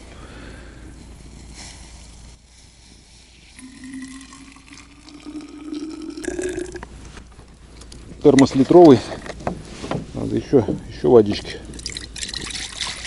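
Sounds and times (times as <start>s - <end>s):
water pouring into a flask: 3.5s - 6.9s, 11.7s - 13.0s.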